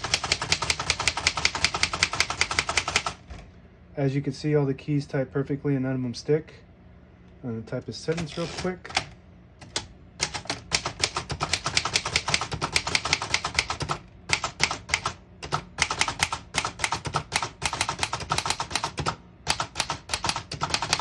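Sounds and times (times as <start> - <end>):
typewriter keys striking: 0.0 - 3.2, 8.1 - 21.0.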